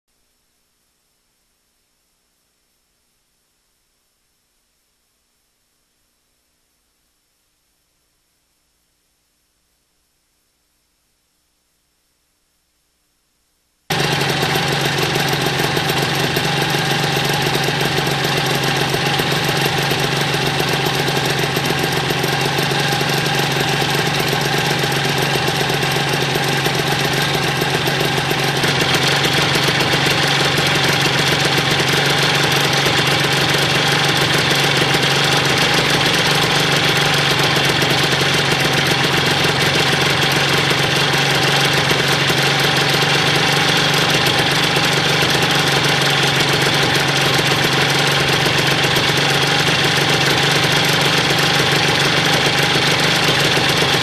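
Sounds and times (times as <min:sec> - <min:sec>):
two-stroke engine idling: 0:13.9 - 0:54.0.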